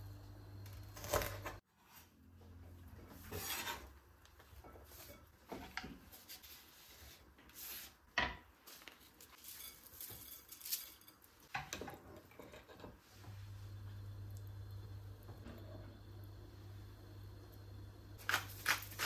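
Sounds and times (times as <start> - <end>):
steady low hum: 0.0 - 1.6, 13.0 - 18.3.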